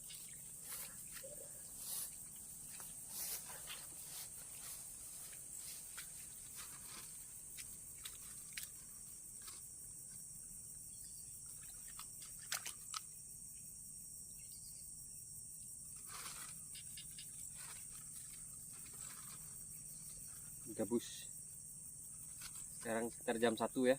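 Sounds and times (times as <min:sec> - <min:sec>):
insects buzzing: 0:00.0 - 0:23.9
brief rustle: 0:16.0 - 0:16.6.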